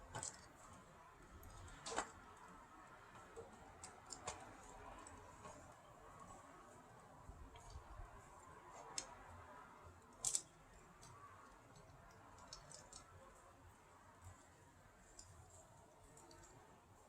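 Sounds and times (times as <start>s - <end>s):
small hard objects clicking: 3.1s - 5.3s, 10.0s - 13.2s.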